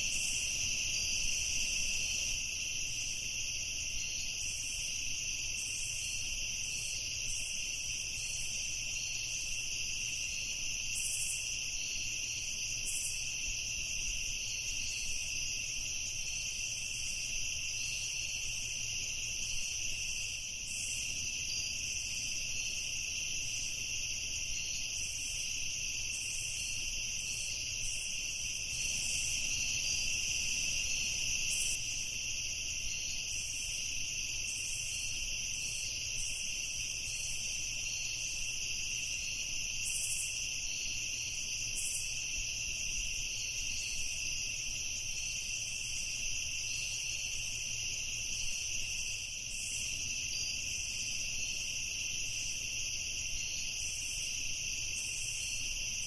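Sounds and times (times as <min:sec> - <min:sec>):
crickets trilling: 0:00.0 - 0:56.0.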